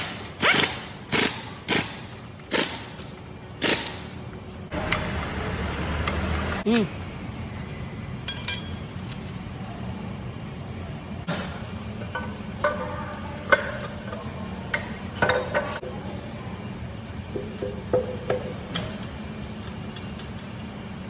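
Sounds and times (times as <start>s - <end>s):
steady low hum: 4.5s - 7.2s.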